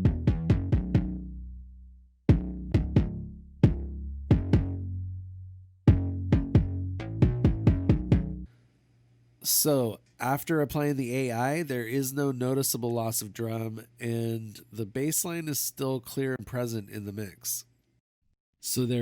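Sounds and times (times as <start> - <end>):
electronic kick drum: 0.0 - 1.2, 2.3 - 4.8, 5.9 - 8.4
synth bass line: 0.0 - 1.6, 2.3 - 5.2, 5.9 - 8.5.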